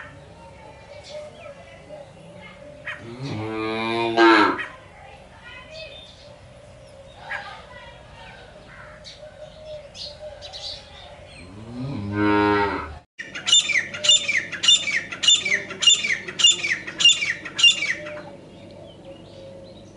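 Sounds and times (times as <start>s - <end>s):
cow mooing: 3.0s - 4.6s, 11.4s - 13.0s
francolin calling: 13.2s - 19.7s.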